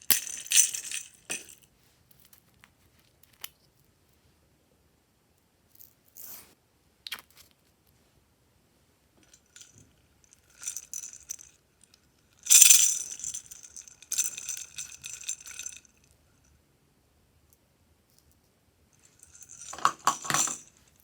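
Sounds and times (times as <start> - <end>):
small hard pieces rattling in container: 12.5 - 15.8, 19.2 - 20.7.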